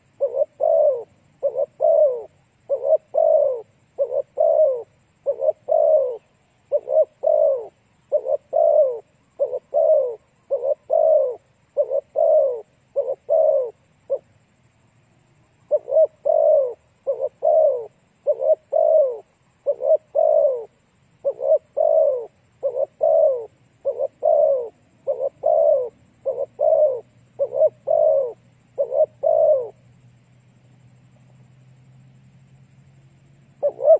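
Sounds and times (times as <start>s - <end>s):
dove cooing: 0.0s - 15.0s, 15.6s - 30.5s, 33.5s - 33.9s.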